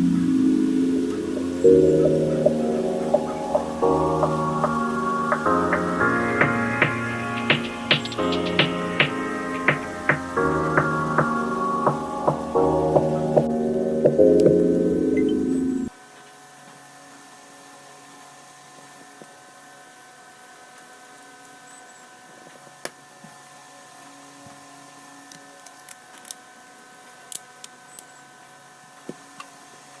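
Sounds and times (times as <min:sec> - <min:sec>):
background music: 0:00.0 - 0:15.9.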